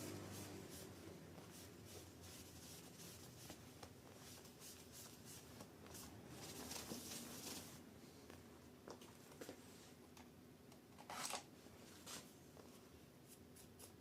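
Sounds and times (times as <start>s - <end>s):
tissue paper rubbing on metal: 0.1s - 3.6s.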